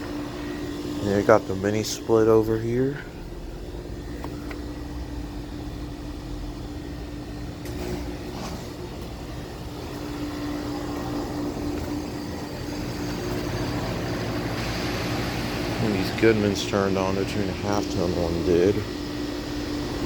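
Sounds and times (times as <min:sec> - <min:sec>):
heat pump compressor and fan hum: 0:00.0 - 0:20.0.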